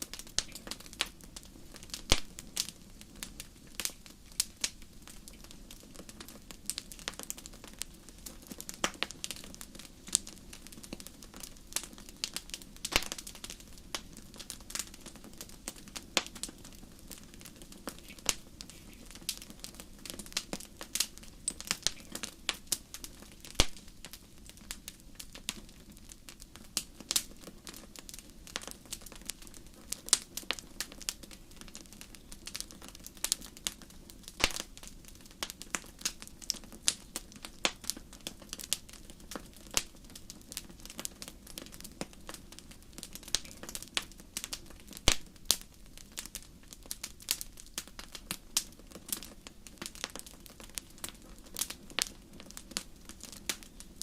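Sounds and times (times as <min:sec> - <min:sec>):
wood fire crackling: 0:00.0 - 0:54.0.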